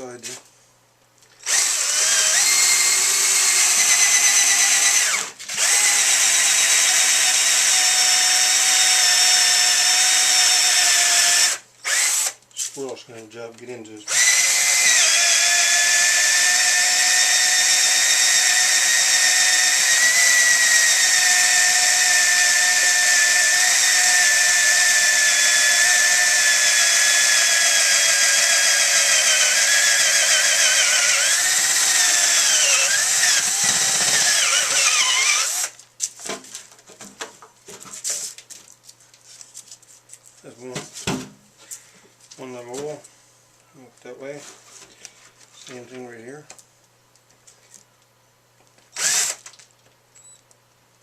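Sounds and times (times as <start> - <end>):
cordless drill boring wood: 1.4 - 12.4, 14.1 - 35.8, 49.0 - 49.4.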